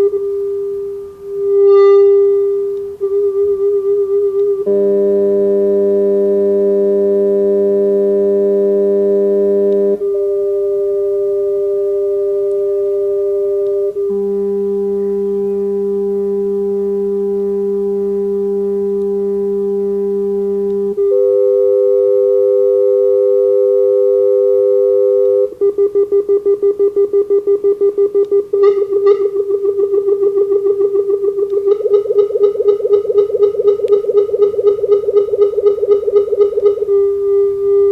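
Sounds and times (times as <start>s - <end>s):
rapidly pulsing tone: 0.0s - 37.9s
steady electronic test tone: 0.0s - 37.9s
layered electronic tones: 25.3s - 37.9s.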